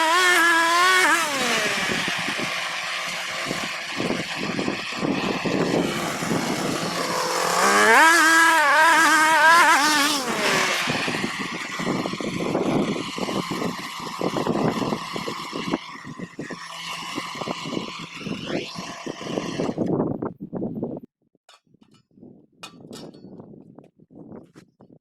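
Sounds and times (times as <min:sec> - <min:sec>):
small petrol engine running: 0:00.0 - 0:19.9.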